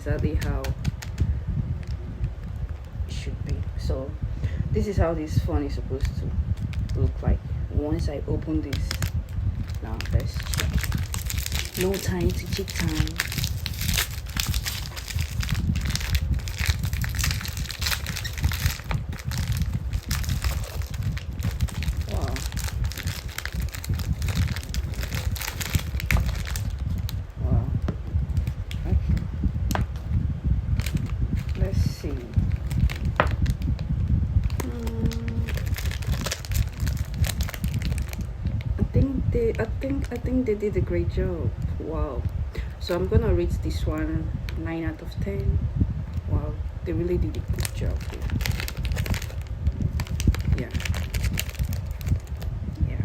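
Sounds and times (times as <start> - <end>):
low rumble: 0.0 - 53.0
low steady hum: 0.0 - 53.0
packaging crinkling: 8.7 - 27.2, 28.3 - 30.1, 30.8 - 33.8, 34.4 - 38.3, 47.3 - 52.5.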